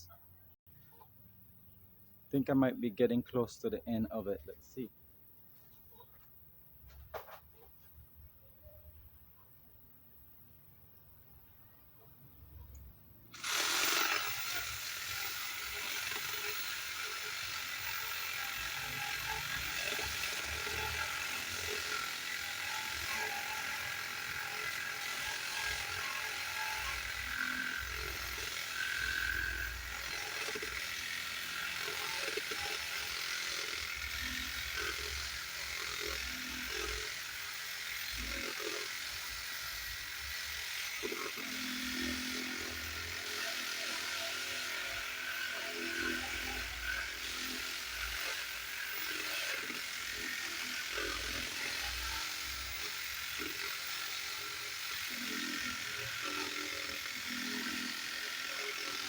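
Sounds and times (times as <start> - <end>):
power saw cutting timber: 13.3 - 59.0.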